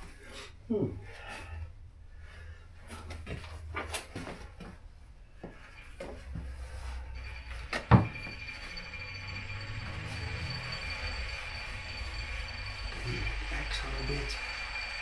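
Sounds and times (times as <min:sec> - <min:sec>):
faint high tone: 0:07.0 - 0:15.0.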